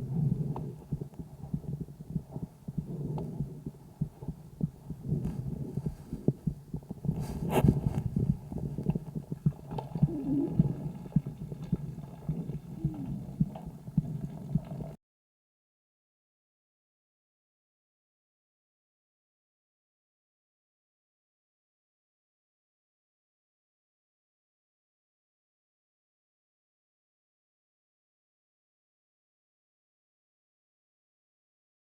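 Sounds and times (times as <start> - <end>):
breathing and heartbeat rumble: 0.0 - 15.0.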